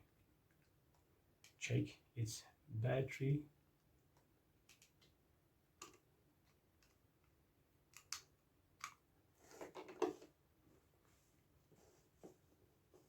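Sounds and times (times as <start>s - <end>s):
plastic parts clicking: 4.7s - 5.1s, 7.9s - 9.0s.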